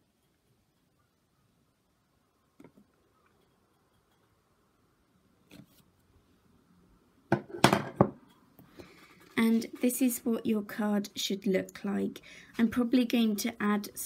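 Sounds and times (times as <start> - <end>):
loud knocks on tabletop: 7.3 - 8.2
tool tapping on tabletop: 7.3 - 8.2.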